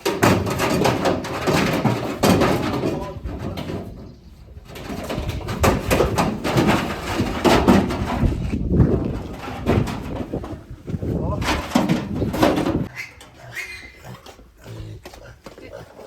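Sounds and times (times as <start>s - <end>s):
pigs grunting: 11.0s - 16.0s.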